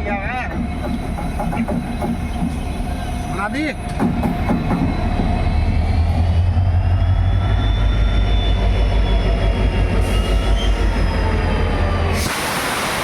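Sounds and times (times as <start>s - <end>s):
locomotive engine humming: 0.0s - 12.9s
whining tones: 0.5s - 12.3s
loud hiss: 12.2s - 13.0s.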